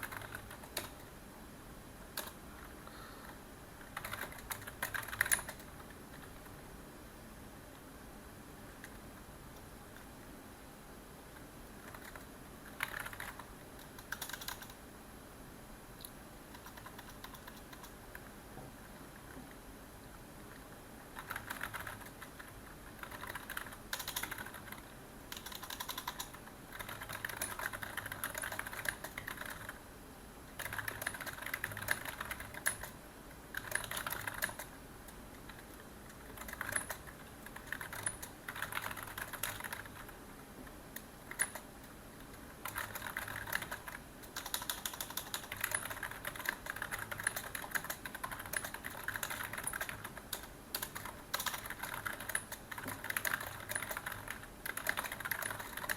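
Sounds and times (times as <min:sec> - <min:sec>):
typing on computer keyboard: 0:00.0 - 0:01.1, 0:02.1 - 0:06.4, 0:11.8 - 0:14.8, 0:16.0 - 0:18.3, 0:21.1 - 0:29.8, 0:30.6 - 0:34.8, 0:35.4 - 0:40.2, 0:41.0 - 0:41.7, 0:42.3 - 0:55.9.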